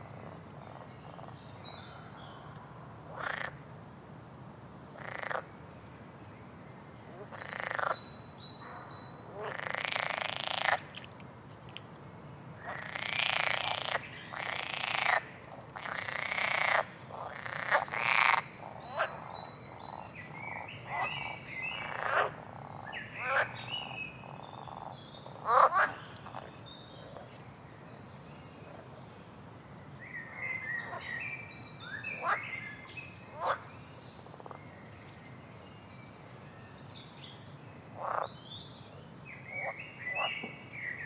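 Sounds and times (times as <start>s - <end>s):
frogs croaking: 3.1s - 3.6s, 5.0s - 5.5s, 7.3s - 11.0s, 12.6s - 27.2s, 31.9s - 32.6s, 33.3s - 33.7s, 38.0s - 38.3s, 39.5s - 40.5s.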